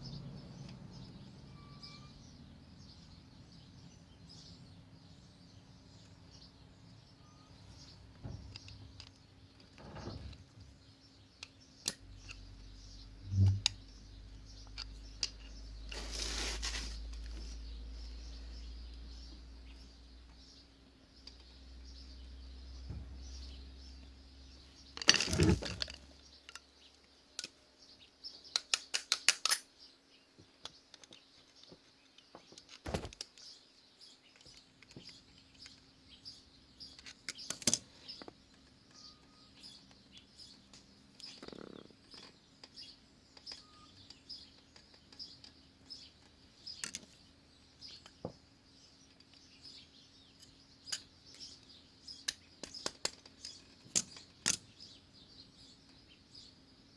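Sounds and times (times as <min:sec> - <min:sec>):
birds chirping: 0:00.0 - 0:28.9, 0:29.7 - 0:56.9
short rustle: 0:15.9 - 0:17.6
tools clicking and knocking on brake: 0:25.0 - 0:27.6.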